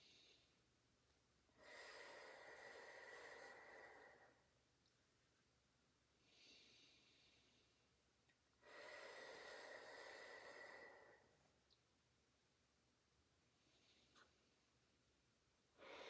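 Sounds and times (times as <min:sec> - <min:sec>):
person breathing in through nose: 0:08.6 - 0:11.4.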